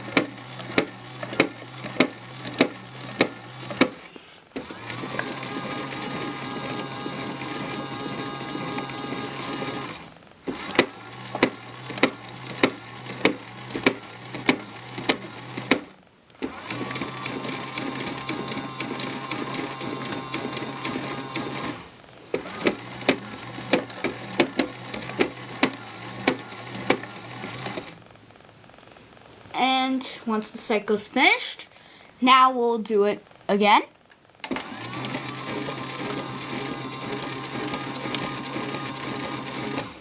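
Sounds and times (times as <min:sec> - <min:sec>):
sharp regular clicks: 0:00.0 - 0:05.4, 0:09.8 - 0:29.9, 0:32.9 - 0:37.0
toy washing machine motor hum: 0:00.0 - 0:30.2, 0:34.3 - 0:40.0.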